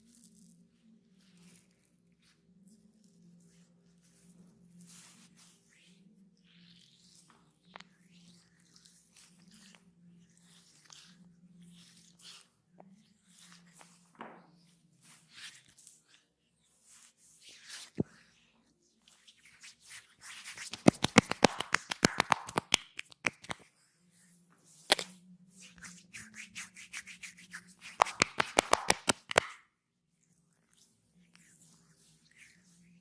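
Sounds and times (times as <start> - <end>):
hands rubbing skin: 19.1 - 23.8, 24.8 - 29.7
rapid hand slaps on skin: 20.5 - 23.7, 27.8 - 29.6.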